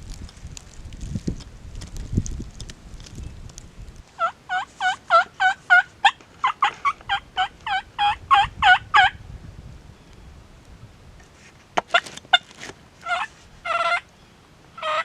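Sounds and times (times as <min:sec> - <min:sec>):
turkey yelping: 0:04.2 - 0:09.1, 0:13.0 - 0:14.0, 0:14.8 - 0:15.0.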